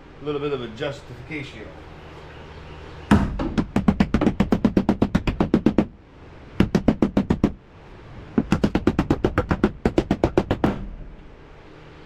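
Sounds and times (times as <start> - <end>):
hammering on metal: 3.1 - 6.0, 6.6 - 7.6, 8.4 - 10.9.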